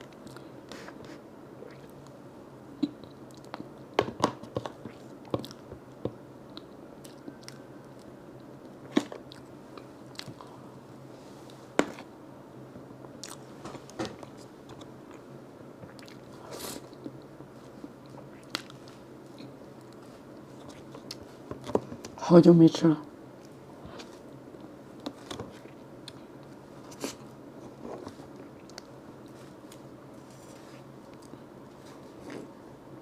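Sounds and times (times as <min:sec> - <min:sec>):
low steady hum: 0:00.0 - 0:33.0
chewing and biting: 0:06.5 - 0:10.5.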